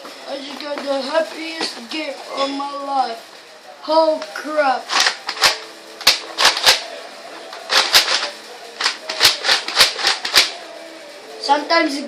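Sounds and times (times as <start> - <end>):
plastic packaging clicks and snaps: 7.6 - 10.6.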